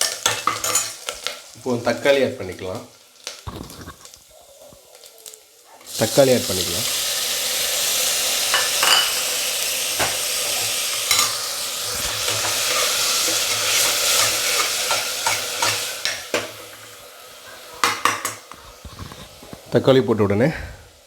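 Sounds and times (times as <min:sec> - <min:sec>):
tomatoes sizzling in hot oil: 0:00.0 - 0:21.0
spatula scraping a pan: 0:10.0 - 0:19.8.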